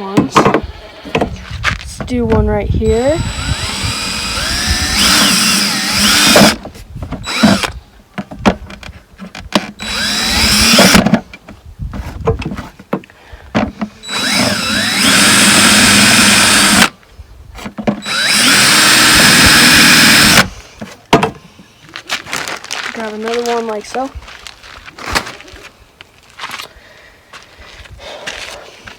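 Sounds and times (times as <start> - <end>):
power drill whining: 2.8 - 6.6, 7.2 - 7.8, 9.8 - 11.1, 14.0 - 16.9, 18.0 - 20.5.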